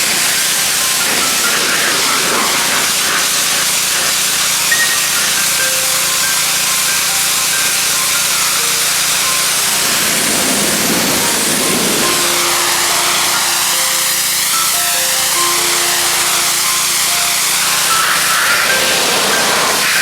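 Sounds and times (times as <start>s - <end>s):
pressure washer spraying water: 0.0s - 20.0s.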